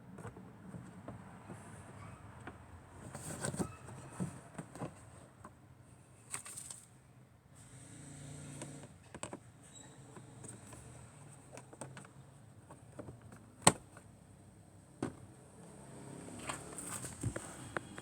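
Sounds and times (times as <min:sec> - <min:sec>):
plastic parts clicking and rustling: 0:06.2 - 0:06.9, 0:10.1 - 0:14.1.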